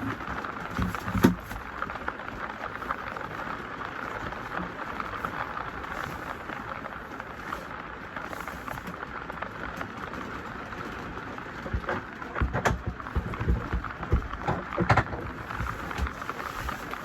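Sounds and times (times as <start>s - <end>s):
porcelain toilet knocks and clunks: 12.4s - 15.2s.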